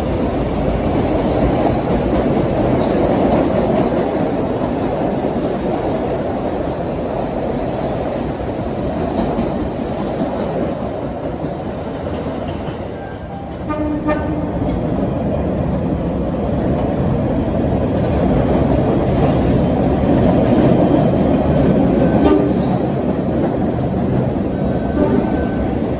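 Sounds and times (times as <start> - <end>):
train wheels rumbling on rail: 0.0 - 25.9
train horn toot: 13.0 - 14.5, 22.0 - 22.8, 24.8 - 25.9.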